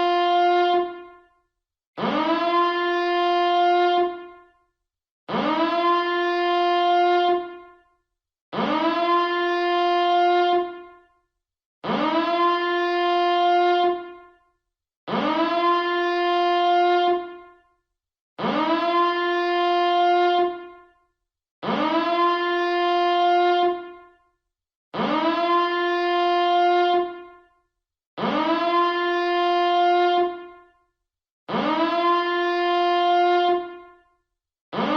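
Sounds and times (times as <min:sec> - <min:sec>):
alarm siren blasts: 0:02.0 - 0:04.6, 0:05.3 - 0:07.9, 0:08.5 - 0:11.2, 0:11.8 - 0:14.5, 0:15.1 - 0:17.7, 0:18.4 - 0:21.0, 0:21.6 - 0:24.2, 0:25.0 - 0:27.6, 0:28.2 - 0:30.8, 0:31.5 - 0:34.1.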